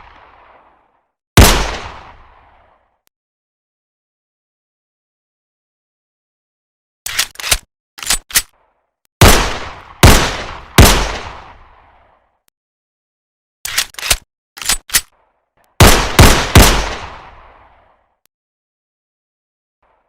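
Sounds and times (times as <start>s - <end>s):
pistol shots echoing: 1.4s - 2.6s, 9.2s - 11.6s, 15.8s - 17.5s
pistol reloading clicks: 7.1s - 8.5s, 13.7s - 15.1s.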